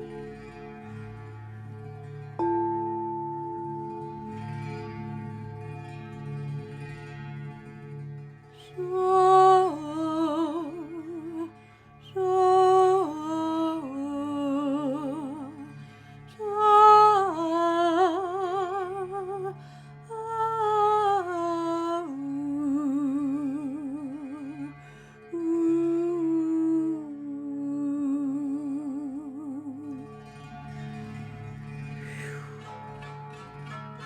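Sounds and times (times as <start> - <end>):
monochord drone: 2.4 - 26.0.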